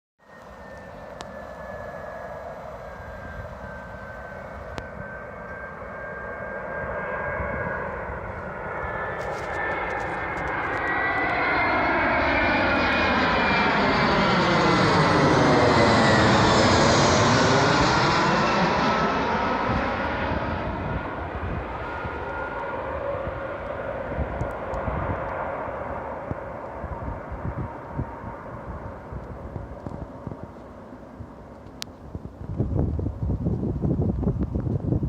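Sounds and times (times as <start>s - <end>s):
high engine whine: 0.2s - 35.0s
jet airliner engines: 0.2s - 35.0s.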